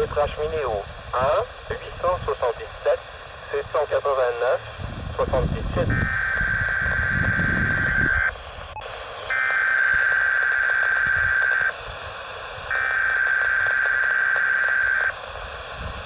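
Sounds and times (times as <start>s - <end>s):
radio hiss: 0.0s - 16.0s
shrill two-tone data warble: 5.9s - 11.8s, 12.7s - 15.2s.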